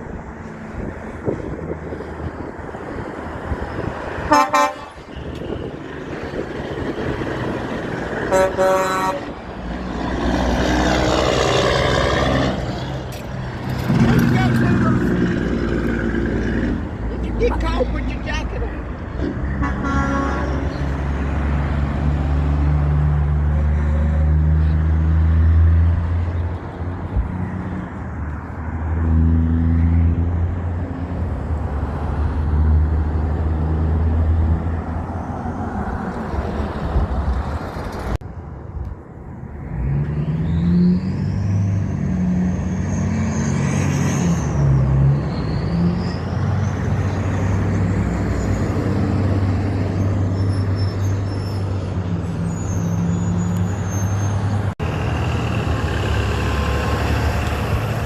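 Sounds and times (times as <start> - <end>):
truck diesel engines passing: 0.0 - 58.0.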